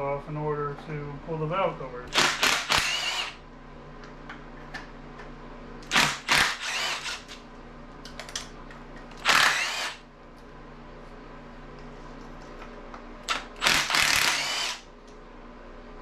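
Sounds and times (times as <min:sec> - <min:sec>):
cordless drill spinning bolts: 0:02.1 - 0:03.4, 0:05.8 - 0:07.4, 0:09.2 - 0:10.0, 0:13.3 - 0:14.8.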